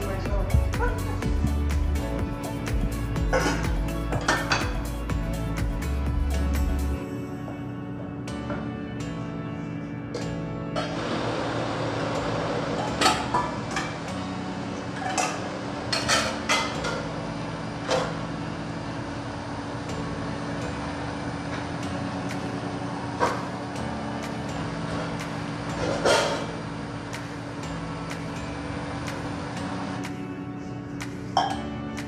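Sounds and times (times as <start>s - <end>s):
quiet background music: 0.0s - 32.0s
utensils and dishes clinking: 3.3s - 4.9s, 12.7s - 14.1s, 14.8s - 17.1s, 25.0s - 26.6s, 31.3s - 31.7s.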